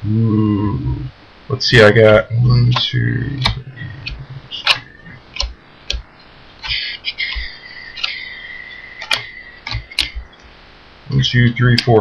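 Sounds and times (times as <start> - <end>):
cards tapping down: 2.8 - 8.3, 9.0 - 10.3.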